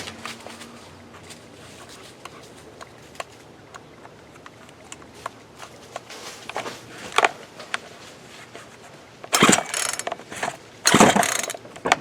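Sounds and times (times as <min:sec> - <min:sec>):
chainsaw recoil starter pulled: 0:09.3 - 0:11.6
engine turning over rattling: 0:09.3 - 0:11.6.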